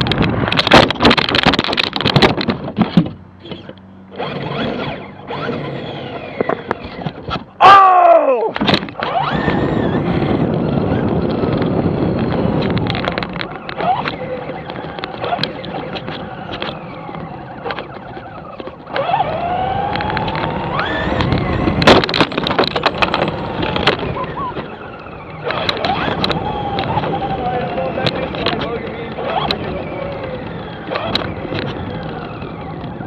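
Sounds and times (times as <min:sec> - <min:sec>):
car bumping and knocking: 0:00.0 - 0:03.8, 0:08.5 - 0:09.6, 0:19.9 - 0:33.0
wheels rolling roughly: 0:00.0 - 0:07.8, 0:08.5 - 0:33.0
toy car motor whining: 0:03.4 - 0:07.4, 0:09.0 - 0:33.0.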